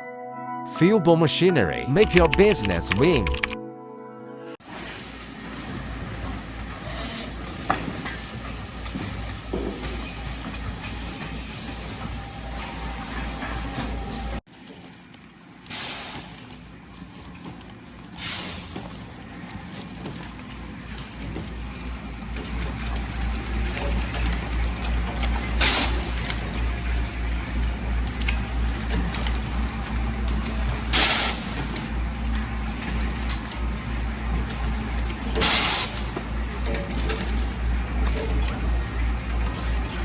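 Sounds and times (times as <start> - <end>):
machine humming with rhythmic pulse: 19.1 - 40.0.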